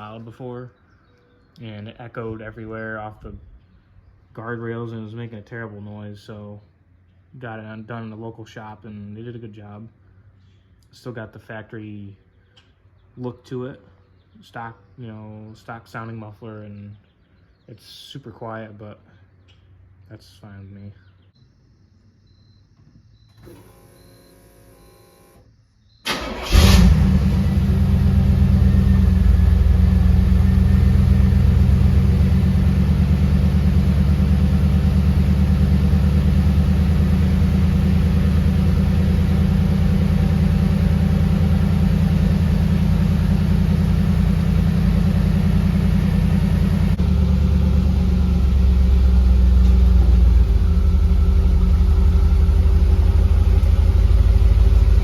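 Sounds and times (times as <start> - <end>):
car engine starting and idling: 23.4 - 55.0.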